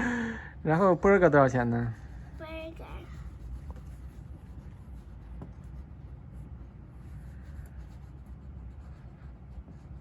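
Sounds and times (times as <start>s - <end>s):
low room hum: 0.0s - 10.0s
pen scratching on paper: 2.0s - 10.0s.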